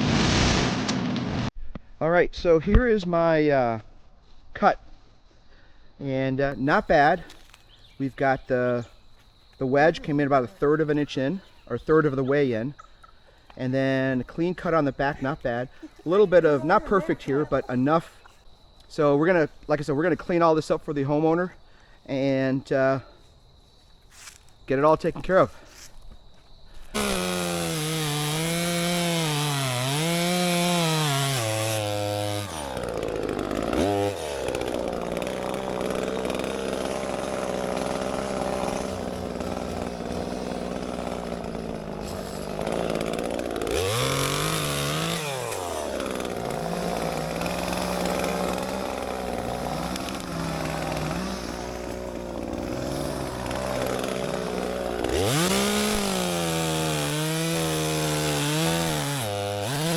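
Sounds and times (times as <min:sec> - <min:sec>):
chainsaw cutting logs: 0:00.0 - 0:01.5, 0:26.9 - 0:59.9.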